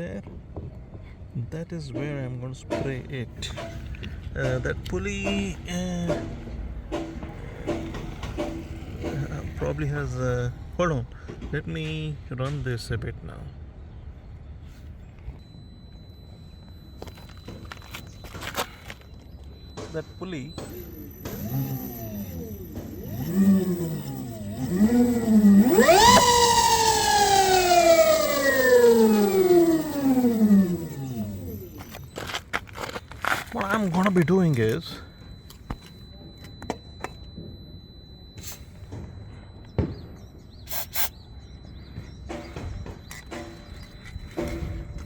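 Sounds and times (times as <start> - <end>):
electric scooter motor whining: 6.9 - 10.2, 15.4 - 39.9, 41.4 - 45.0
harsh pulley screech: 20.3 - 33.5
aerosol can hissing spray: 40.7 - 41.1.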